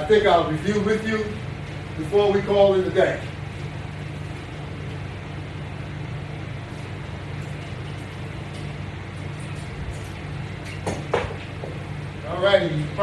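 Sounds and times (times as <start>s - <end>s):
low machine hum with hiss: 0.0s - 13.0s.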